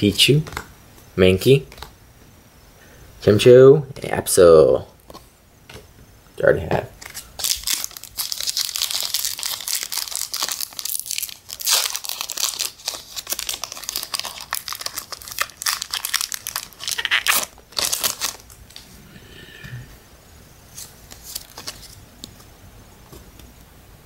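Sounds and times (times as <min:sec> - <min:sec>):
plastic wrapper crinkling and tearing: 0:07.0 - 0:18.8, 0:20.8 - 0:22.4.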